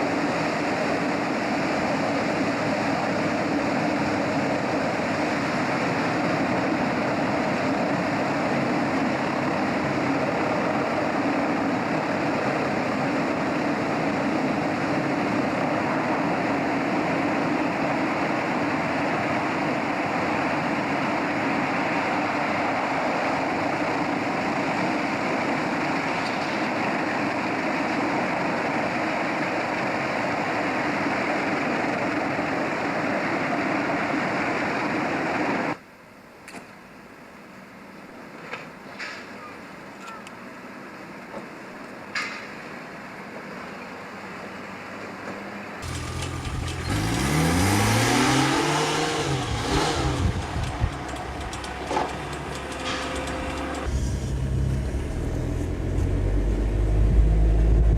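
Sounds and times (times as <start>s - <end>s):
ferry engine rumbling: 43.8s - 57.9s
rush of noise: 45.8s - 57.9s.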